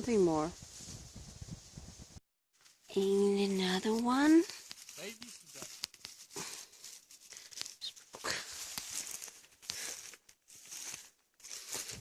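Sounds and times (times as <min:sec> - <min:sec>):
rustling in dry leaves: 0:02.6 - 0:12.0
twigs snapping: 0:03.9 - 0:12.0.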